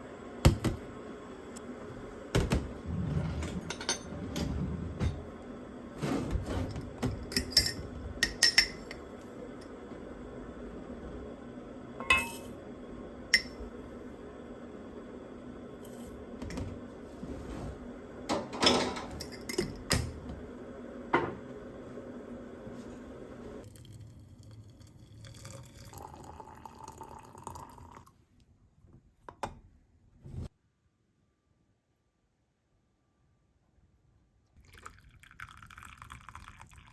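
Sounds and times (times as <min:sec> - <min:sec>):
dishes and utensils clinking: 0:02.5 - 0:05.3, 0:06.3 - 0:09.8, 0:12.0 - 0:12.6, 0:13.4 - 0:13.6, 0:18.3 - 0:20.2.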